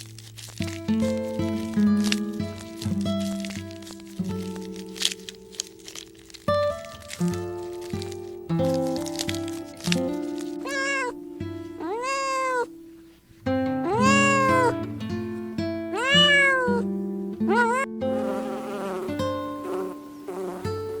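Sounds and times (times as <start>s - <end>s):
rough buzzing: 0.0s - 11.1s, 11.7s - 12.7s, 13.8s - 21.0s
drawn-out animal calls: 10.6s - 12.8s, 13.8s - 14.9s, 15.9s - 16.8s, 17.5s - 17.9s.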